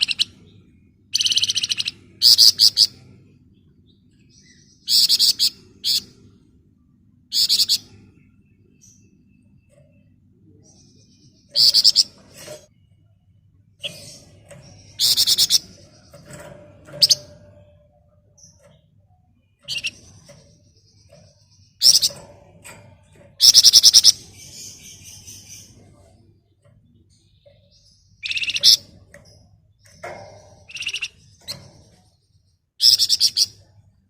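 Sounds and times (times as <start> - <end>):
soft bird chirps: 0.0 - 34.0
songbird trilling: 1.1 - 3.0, 14.9 - 16.0, 19.7 - 20.0, 23.4 - 25.7, 28.2 - 28.8, 30.7 - 31.2, 32.8 - 33.5.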